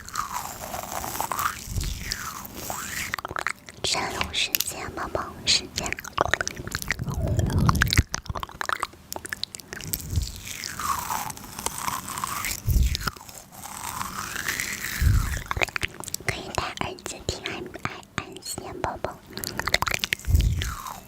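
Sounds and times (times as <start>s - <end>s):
crunching food while chewing: 0.0s - 4.3s, 5.8s - 17.0s, 19.0s - 21.0s
low thumps: 6.7s - 8.4s.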